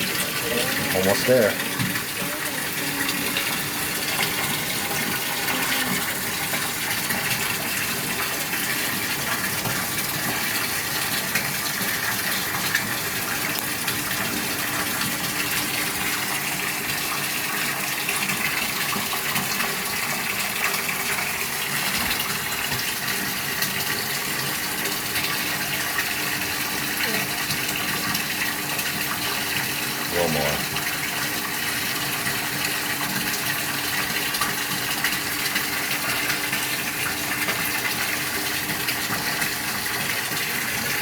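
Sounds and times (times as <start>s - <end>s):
water gushing from tub spout: 0.0s - 41.0s.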